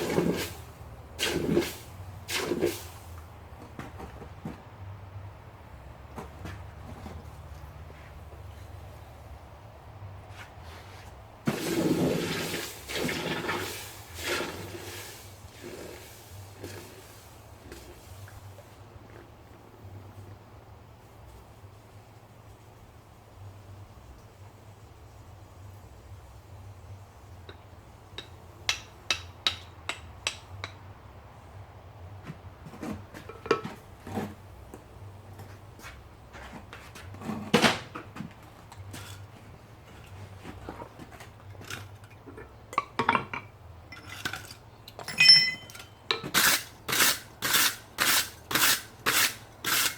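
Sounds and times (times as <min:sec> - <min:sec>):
low steady hum: 0:12.8 - 0:46.9
hammer striking copper on anvil: 0:28.2 - 0:30.8, 0:45.0 - 0:46.2
hot metal hissing in water: 0:46.4 - 0:49.9.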